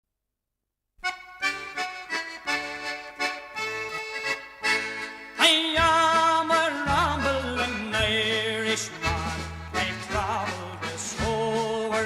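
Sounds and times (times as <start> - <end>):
folk song instrumental melody: 1.0 - 12.0
person singing: 5.3 - 12.0.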